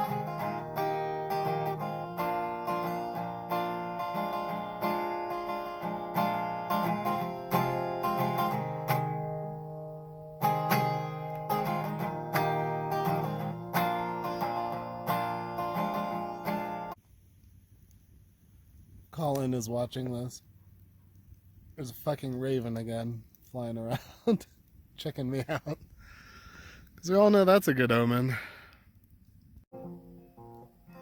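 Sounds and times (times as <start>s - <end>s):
acoustic guitar strumming: 0.0s - 17.0s, 29.7s - 31.0s.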